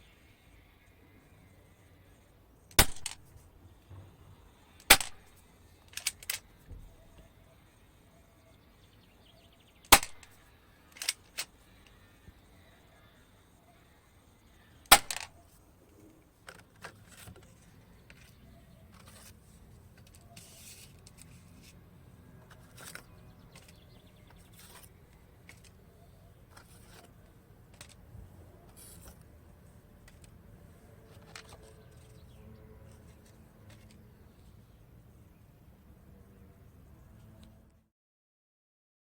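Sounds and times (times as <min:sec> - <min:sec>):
airsoft gun shots: 0:02.8 - 0:03.2, 0:04.9 - 0:05.2, 0:09.9 - 0:10.3, 0:14.9 - 0:15.3
handling clicks and rattles: 0:04.8 - 0:07.3, 0:10.9 - 0:11.5, 0:14.9 - 0:15.6, 0:16.4 - 0:21.8, 0:22.4 - 0:25.8, 0:26.4 - 0:28.1, 0:31.0 - 0:34.1.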